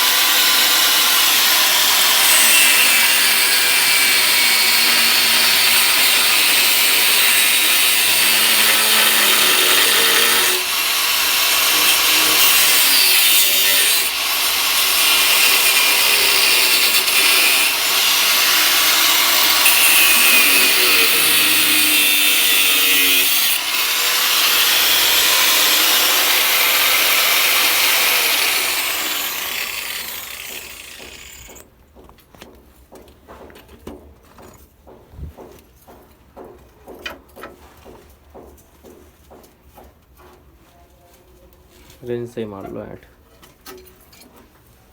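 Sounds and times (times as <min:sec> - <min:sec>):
power cutter cutting metal pipe: 0:00.0 - 0:31.6.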